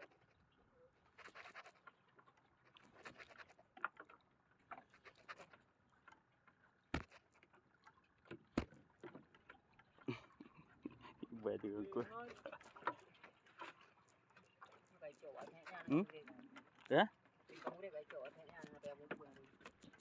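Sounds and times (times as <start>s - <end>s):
faint clicks and rustling: 1.1s - 20.0s.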